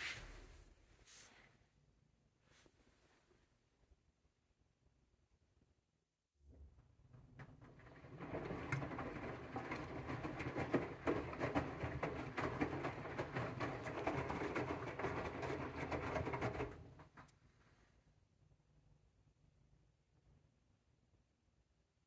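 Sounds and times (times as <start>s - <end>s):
washing machine drum churning: 6.7s - 17.2s.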